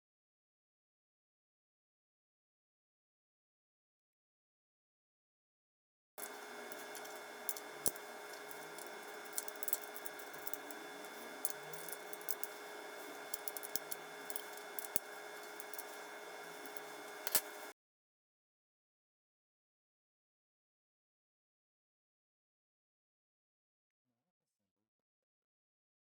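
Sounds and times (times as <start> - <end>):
faint steady hum: 6.2 - 17.7
small metal parts clicking and rattling: 6.2 - 17.7.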